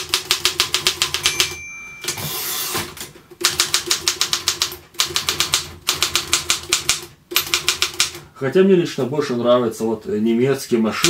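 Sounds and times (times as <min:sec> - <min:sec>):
typewriter bell ring: 0:01.0 - 0:02.8
typewriter carriage return swish: 0:02.0 - 0:03.1.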